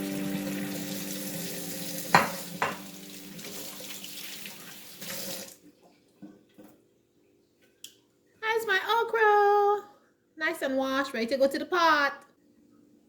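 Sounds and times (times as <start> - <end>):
tap water running into sink: 0.0 - 5.6.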